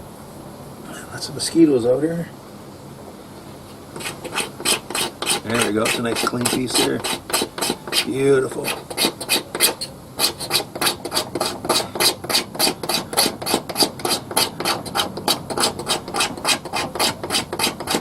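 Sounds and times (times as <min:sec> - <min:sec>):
knife scraping wood: 0:04.0 - 0:18.0.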